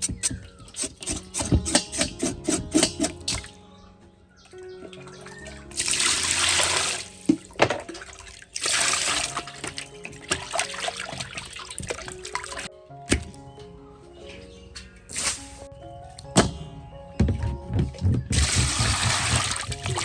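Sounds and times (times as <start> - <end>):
soft background music: 0.0 - 20.0
water splashing: 4.8 - 13.3, 18.4 - 20.0.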